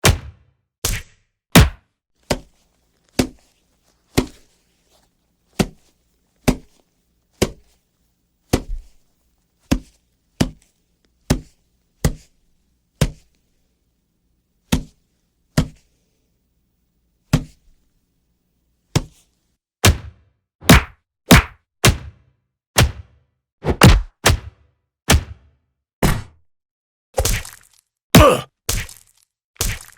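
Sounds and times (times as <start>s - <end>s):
punch sound effects: 0.0s - 1.8s, 19.9s - 22.1s, 23.6s - 24.5s, 28.2s - 28.5s.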